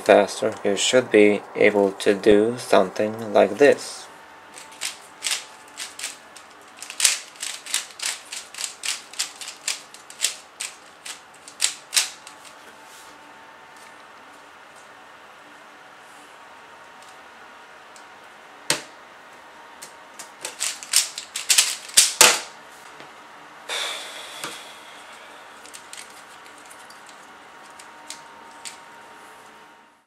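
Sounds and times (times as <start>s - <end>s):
puzzle cube clicking turns: 4.6s - 6.2s, 6.8s - 12.3s, 20.4s - 22.2s.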